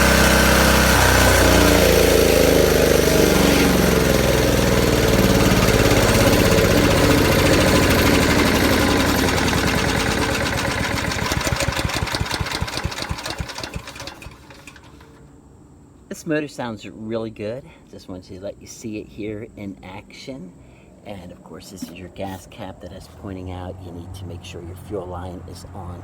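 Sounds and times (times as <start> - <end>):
small gas engine running: 0.0 - 15.3.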